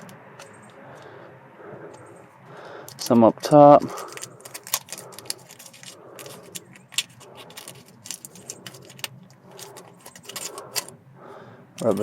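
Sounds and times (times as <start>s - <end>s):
metallic clicks and rattles: 2.9s - 10.9s, 11.8s - 12.0s.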